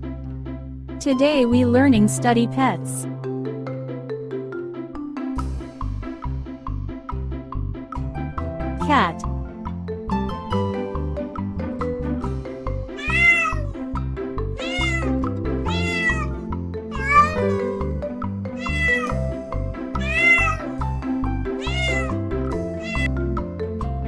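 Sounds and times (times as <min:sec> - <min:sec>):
background music: 0:00.0 - 0:24.0
cat meowing: 0:13.0 - 0:13.8, 0:14.6 - 0:17.8, 0:18.6 - 0:19.3, 0:20.0 - 0:20.8, 0:21.6 - 0:23.2.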